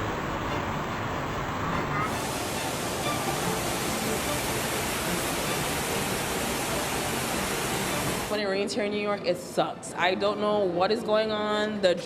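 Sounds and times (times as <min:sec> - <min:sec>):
floodwater gushing: 0:00.0 - 0:08.3.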